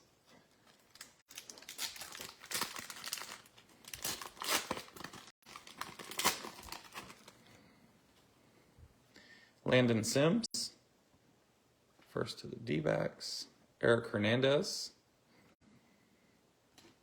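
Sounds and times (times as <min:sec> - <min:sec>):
wrapper crinkling and tearing: 0:00.6 - 0:07.5.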